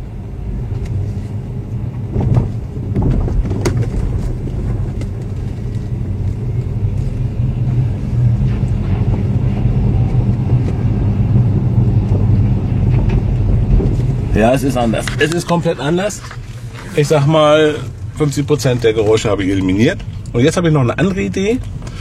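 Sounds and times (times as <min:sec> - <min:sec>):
low road rumble inside car: 0:00.0 - 0:22.0
shock absorbers knocking: 0:02.1 - 0:06.7.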